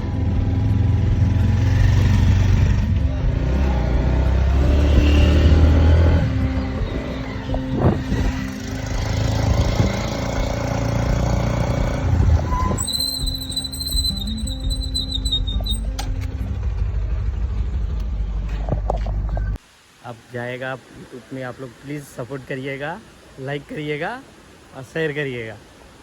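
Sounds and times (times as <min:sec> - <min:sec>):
vehicle engine droning: 0:00.0 - 0:19.6.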